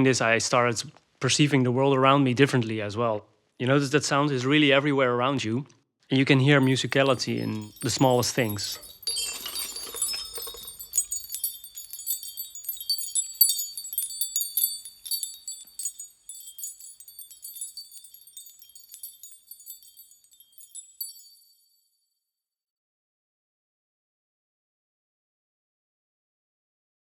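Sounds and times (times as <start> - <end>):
high tinkling chimes: 6.5 - 21.9.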